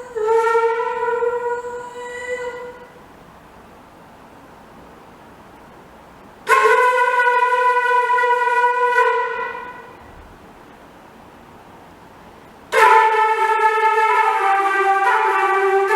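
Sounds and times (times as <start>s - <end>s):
long wind instrument note: 6.5s - 10.2s, 12.7s - 15.9s.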